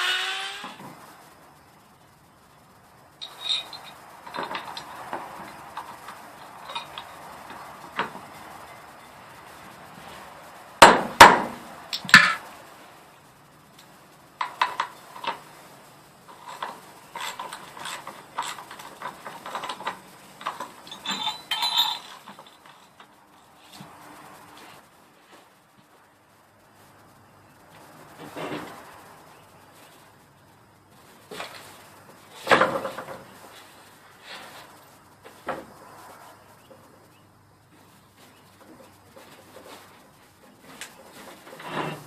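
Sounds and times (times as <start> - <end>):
metal hardware clinking: 3.2 - 7.3, 16.3 - 23.1.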